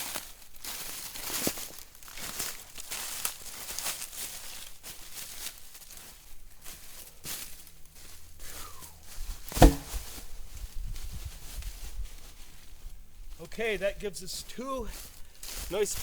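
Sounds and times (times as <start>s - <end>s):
footsteps crunching dry leaves: 0.0s - 16.0s
heavy thump: 9.5s - 10.2s.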